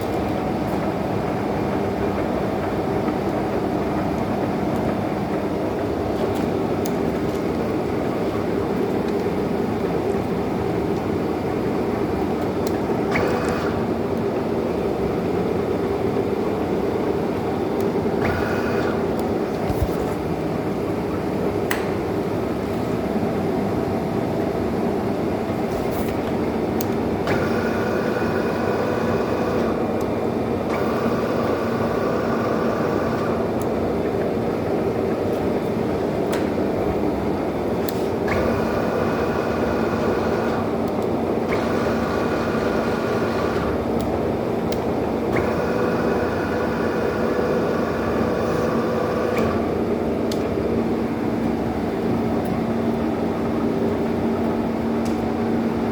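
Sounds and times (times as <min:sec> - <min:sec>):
lathe mechanical hum: 0:00.0 - 0:55.9.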